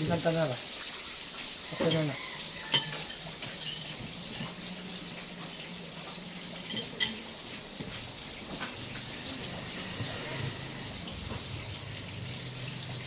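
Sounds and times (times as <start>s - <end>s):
tableware clinking: 1.8s - 4.6s, 6.6s - 7.5s.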